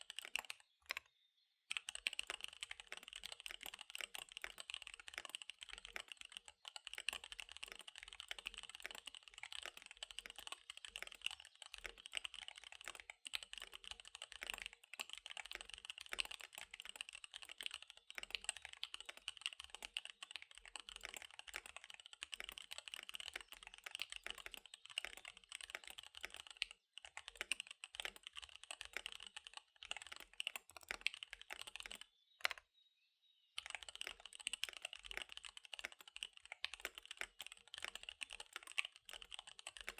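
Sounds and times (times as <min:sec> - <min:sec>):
mechanical keyboard typing: 0:00.0 - 0:01.0, 0:01.7 - 0:32.6, 0:33.6 - 0:39.9.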